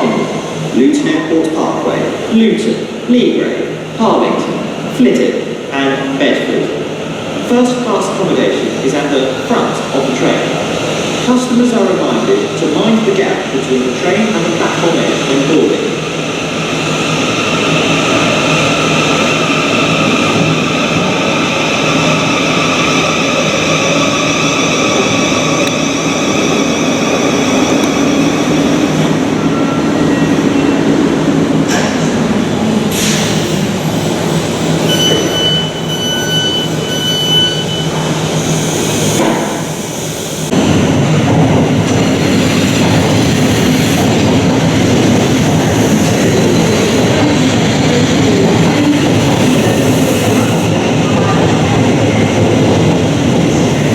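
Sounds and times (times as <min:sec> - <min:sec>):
train rumbling through station: 0:00.0 - 0:53.9
door-warning beeps: 0:34.9 - 0:38.0.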